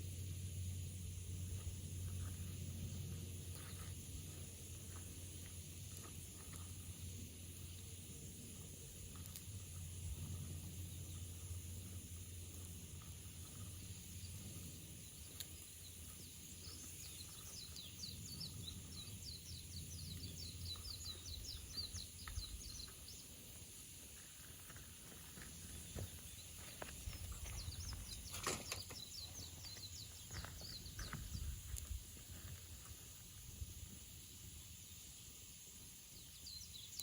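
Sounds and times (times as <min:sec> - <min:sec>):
low steady rumble: 0:00.0 - 0:34.8
bird singing fast trill: 0:09.5 - 0:23.7, 0:26.2 - 0:31.7, 0:36.0 - 0:37.0.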